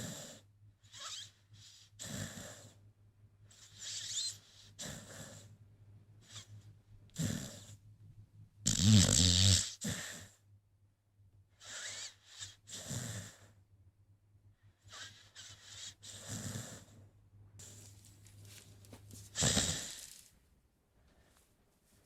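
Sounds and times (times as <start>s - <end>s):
dog snoring: 0.0s - 2.8s, 3.5s - 5.5s, 6.2s - 7.8s, 8.6s - 10.4s, 11.6s - 13.6s, 14.8s - 17.0s, 19.2s - 20.3s.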